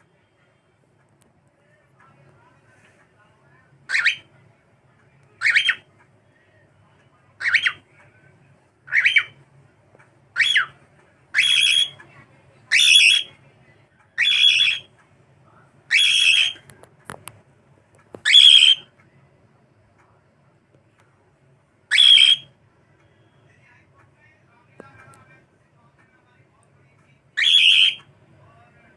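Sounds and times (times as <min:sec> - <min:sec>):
cockatiel whistled calls: 0:03.9 - 0:04.3, 0:05.4 - 0:05.8, 0:07.4 - 0:07.8, 0:08.9 - 0:09.4, 0:10.4 - 0:10.8, 0:11.4 - 0:12.0, 0:12.7 - 0:13.3, 0:14.2 - 0:14.9, 0:15.9 - 0:16.6, 0:18.2 - 0:18.9, 0:21.9 - 0:22.5, 0:27.4 - 0:28.0.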